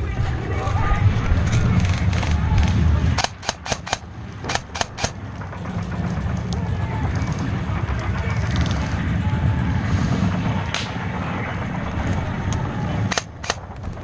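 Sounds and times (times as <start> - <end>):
low rumble: 0.0 - 14.0
airsoft gun shots: 3.2 - 5.2, 13.1 - 14.0
distant rapid shots: 3.2 - 11.2, 13.0 - 14.0.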